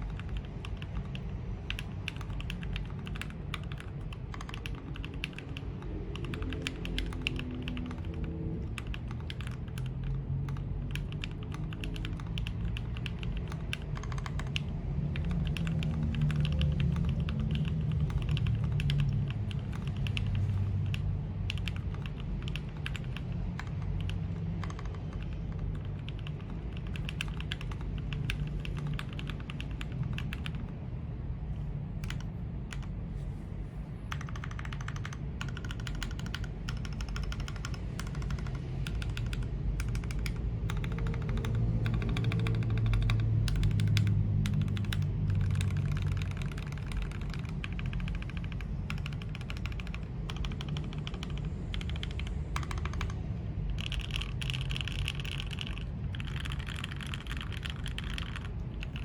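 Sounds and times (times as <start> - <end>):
mechanical keyboard typing: 0.0 - 59.0.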